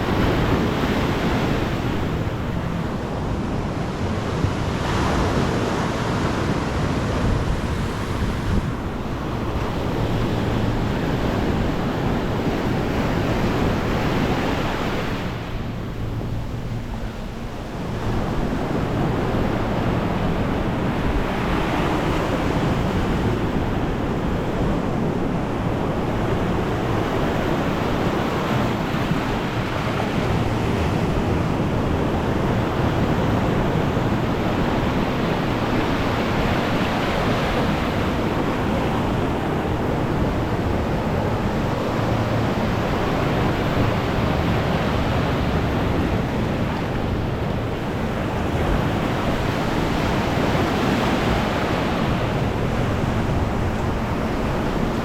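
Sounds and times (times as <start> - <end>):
sea waves breaking: 0.0 - 55.0
wind rumbling on microphone: 0.0 - 55.0.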